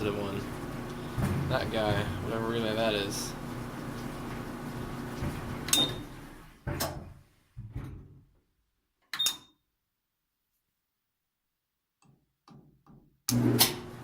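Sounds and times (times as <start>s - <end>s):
dryer motor humming: 0.0s - 6.8s.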